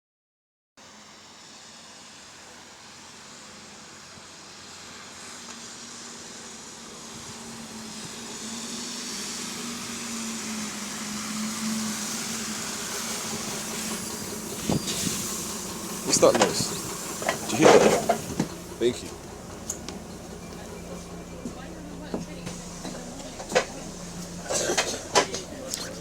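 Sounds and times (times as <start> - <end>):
bus engine hum rising: 0.8 - 26.0
bus running noise: 0.8 - 26.0.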